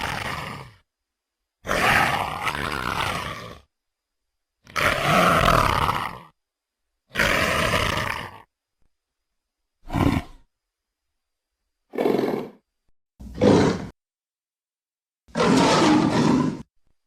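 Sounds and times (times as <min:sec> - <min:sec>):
dinosaur roars: 0:00.0 - 0:00.8, 0:01.6 - 0:03.7, 0:04.7 - 0:06.4, 0:07.1 - 0:08.5, 0:09.8 - 0:10.4, 0:13.2 - 0:14.0, 0:15.3 - 0:16.7.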